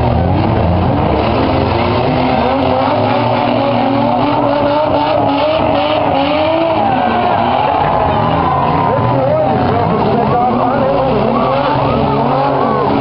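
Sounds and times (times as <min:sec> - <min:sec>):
car engines revving hard: 0:00.0 - 0:13.0.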